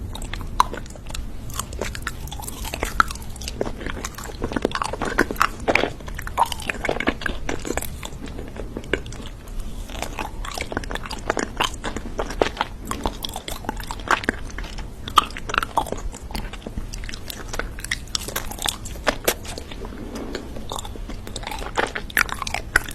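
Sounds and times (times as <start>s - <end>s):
person chewing crunchy food: 0.0s - 22.9s.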